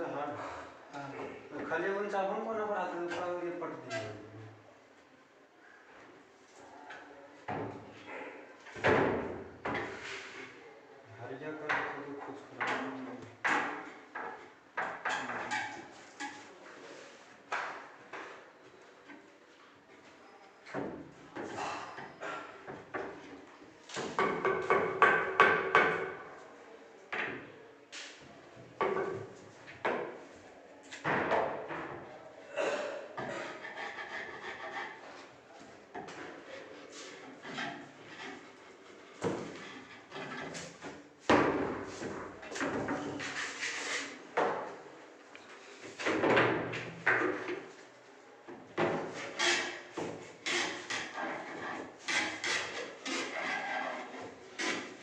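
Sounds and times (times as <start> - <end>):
cabinet doors knocking and banging: 8.7 - 9.9, 24.0 - 26.2
cabinet doors and drawers banging: 8.7 - 10.0.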